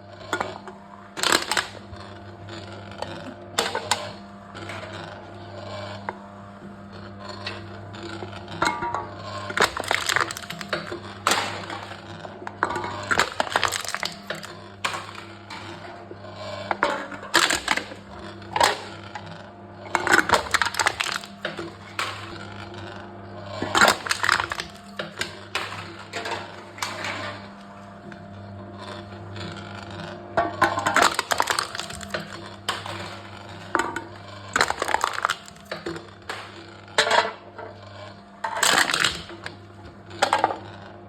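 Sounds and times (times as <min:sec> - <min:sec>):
machine crushing drink cans: 0:01.2 - 0:02.0, 0:08.1 - 0:15.8, 0:16.4 - 0:27.7, 0:28.8 - 0:40.8.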